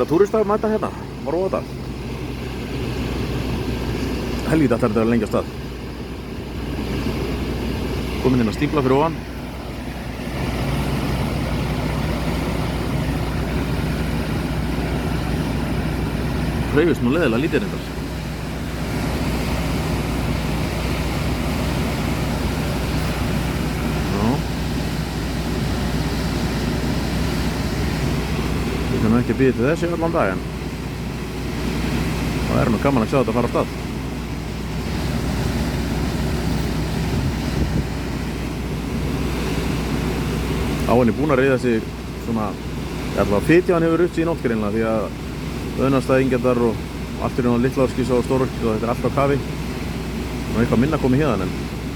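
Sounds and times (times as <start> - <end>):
river rushing roar: 0.0 - 51.9
wind on microphone: 37.0 - 38.2.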